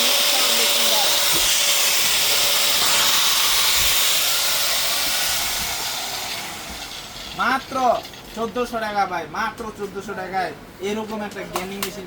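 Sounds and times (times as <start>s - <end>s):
angle grinder whining: 0.0s - 8.5s.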